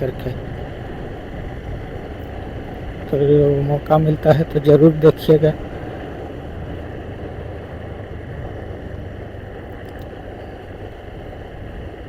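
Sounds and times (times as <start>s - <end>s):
motorcycle engine hum: 0.0s - 12.0s
wind noise on microphone: 0.0s - 12.0s.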